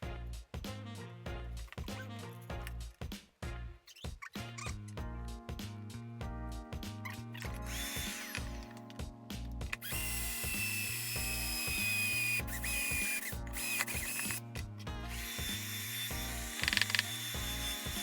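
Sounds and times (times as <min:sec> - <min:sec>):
background music with steady beat: 0:00.0 - 0:18.0
power drill whining: 0:07.4 - 0:08.7, 0:09.7 - 0:18.0.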